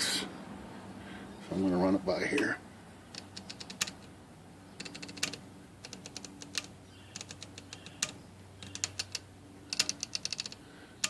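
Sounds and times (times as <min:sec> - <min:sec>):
typewriter ratchet clicks: 0:03.1 - 0:04.1, 0:04.8 - 0:10.6
typewriter motor hum: 0:03.2 - 0:04.0, 0:04.8 - 0:10.6.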